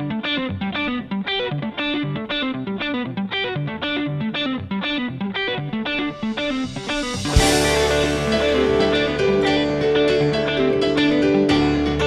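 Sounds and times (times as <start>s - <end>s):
picked electric guitar: 0.0s - 12.0s
repeating bass line: 6.5s - 12.0s.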